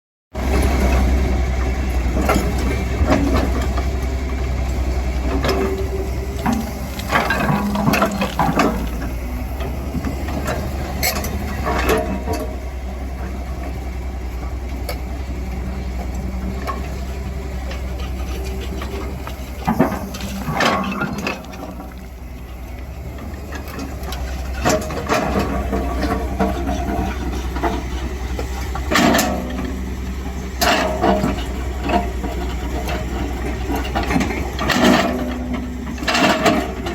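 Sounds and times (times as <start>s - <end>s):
excavator diesel engine rumbling: 0.3s - 36.9s
metal clanks and knocks: 5.1s - 12.6s, 16.0s - 22.6s, 23.2s - 36.9s.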